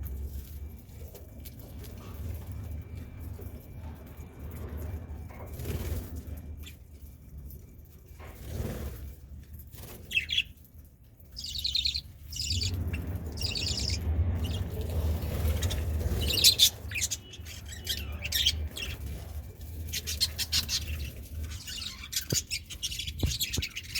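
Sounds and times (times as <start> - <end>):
budgerigars chirping and warbling: 9.9 - 10.5, 11.4 - 23.9
low rumble: 12.0 - 23.9.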